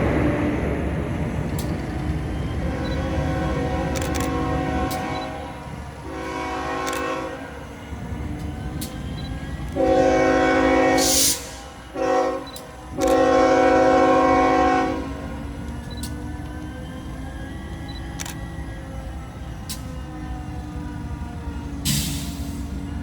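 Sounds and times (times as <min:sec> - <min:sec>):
locomotive engine rumble: 0:00.0 - 0:23.0
locomotive air horn chord: 0:02.4 - 0:15.7
brief air hiss: 0:11.0 - 0:11.7.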